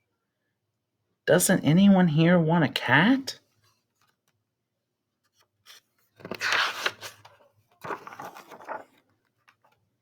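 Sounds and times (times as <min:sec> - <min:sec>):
paper page turning: 0:05.3 - 0:09.8.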